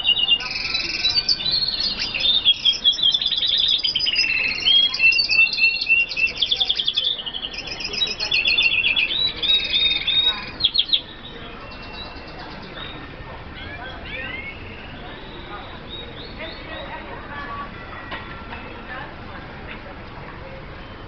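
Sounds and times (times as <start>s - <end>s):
birds singing twittering trills: 0.0s - 19.1s.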